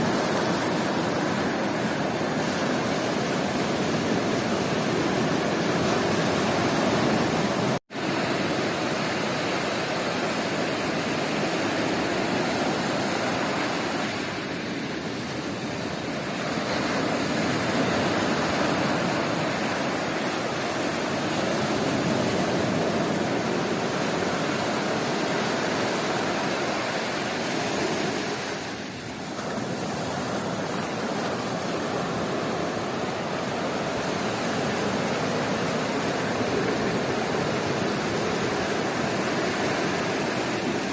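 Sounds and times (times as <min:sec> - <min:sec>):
waves breaking on beach: 0:00.0 - 0:40.9.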